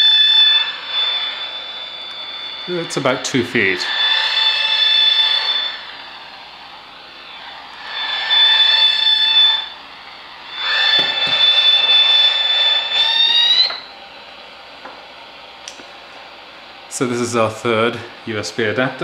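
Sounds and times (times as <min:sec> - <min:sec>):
radio static hiss: 0:00.0 - 0:12.7
high-pitched interference whine: 0:00.0 - 0:19.0.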